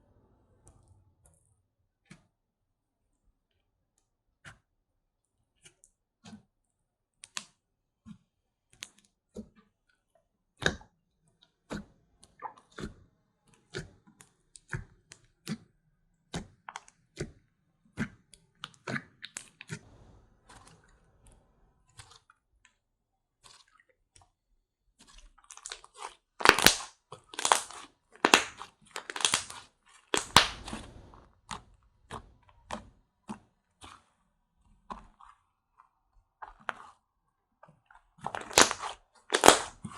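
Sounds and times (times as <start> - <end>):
crunchy squishing of slime: 11.5 - 39.9
slime clicks and pops: 26.4 - 29.6, 30.2 - 31.2, 38.3 - 39.8.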